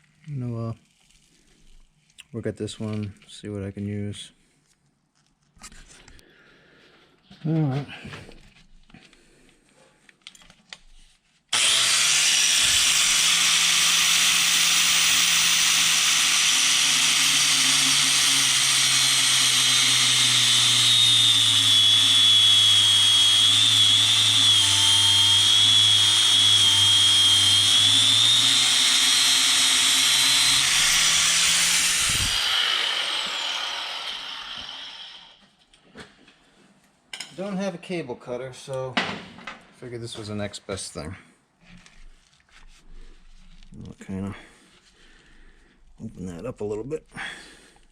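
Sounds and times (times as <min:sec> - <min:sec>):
rotary power tool whining and grinding: 0:11.5 - 0:35.4.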